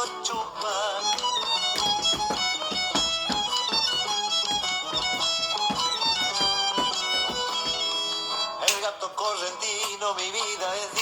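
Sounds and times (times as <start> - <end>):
fiddle melody: 0.0 - 8.7.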